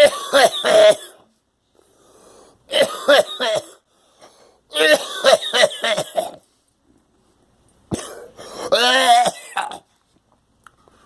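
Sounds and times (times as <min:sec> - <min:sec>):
person coughing: 0:00.0 - 0:01.3, 0:02.7 - 0:03.8, 0:04.7 - 0:06.4, 0:07.9 - 0:09.9.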